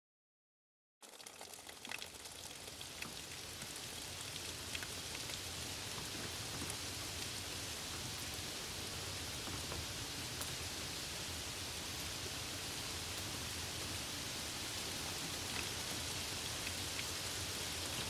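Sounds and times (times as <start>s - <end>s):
raindrops ticking: 1.0s - 10.8s, 15.2s - 18.0s
steady rain: 1.0s - 18.0s.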